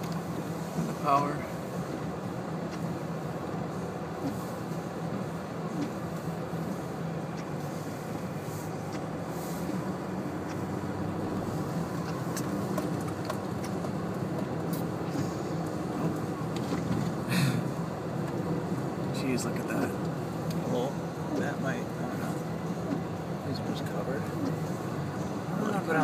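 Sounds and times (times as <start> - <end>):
car engine and tyre hum: 0.0 - 26.0.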